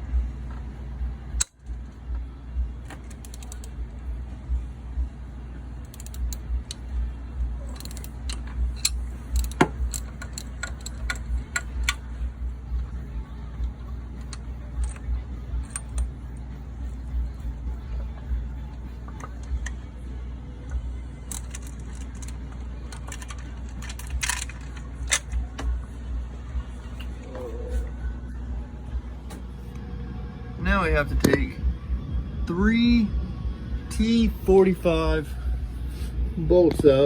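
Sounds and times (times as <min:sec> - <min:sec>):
steady low rumble: 0:00.0 - 0:37.0
metal tools clinking on engine parts: 0:07.6 - 0:12.9, 0:13.6 - 0:16.2, 0:21.2 - 0:25.7.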